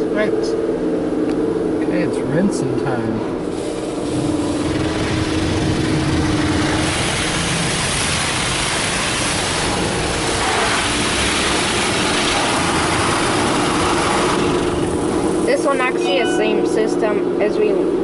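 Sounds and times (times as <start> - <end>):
water spray hissing on car: 3.5 - 15.6.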